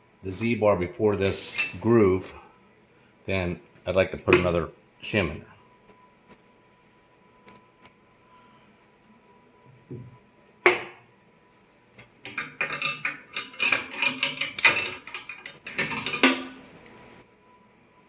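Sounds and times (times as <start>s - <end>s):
metal parts clinking: 12.3s - 16.6s.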